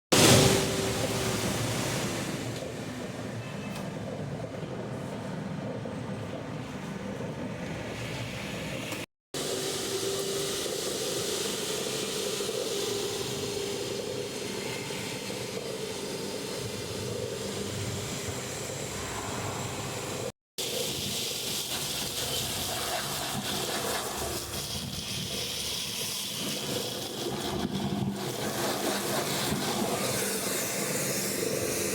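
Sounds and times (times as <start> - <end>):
vacuum cleaner hissing and humming: 9.4 - 31.9.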